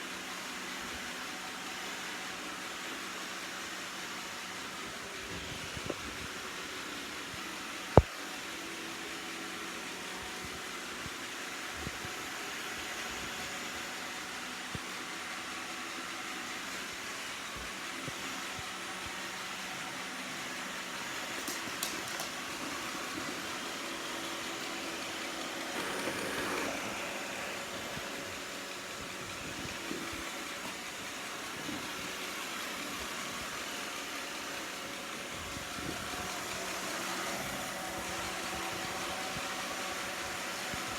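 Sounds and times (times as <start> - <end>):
robot vacuum whirring: 11.9 - 40.9.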